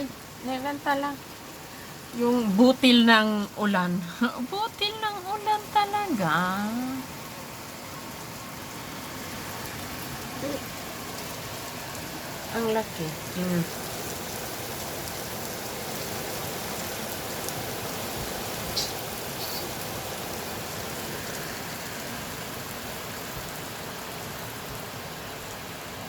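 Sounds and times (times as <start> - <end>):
rain on hard surfaces: 0.0 - 26.0.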